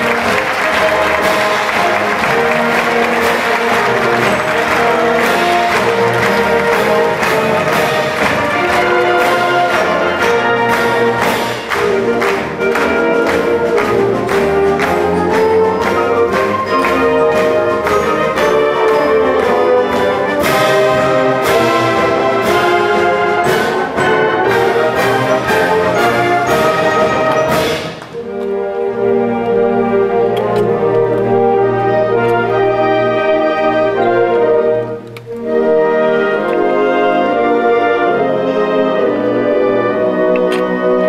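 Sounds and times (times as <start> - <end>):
percussion strikes: 0.0 - 28.6
concert band playing: 0.0 - 41.0.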